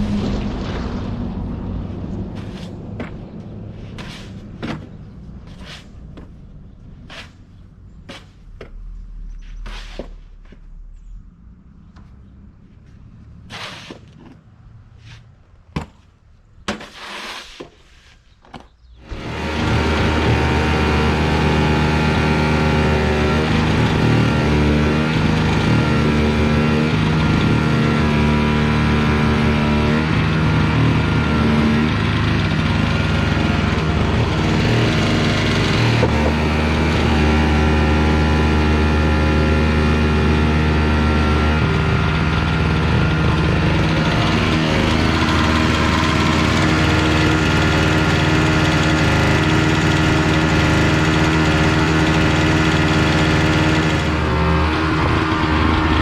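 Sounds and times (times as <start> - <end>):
snowblower engine running: 19.0 - 56.0.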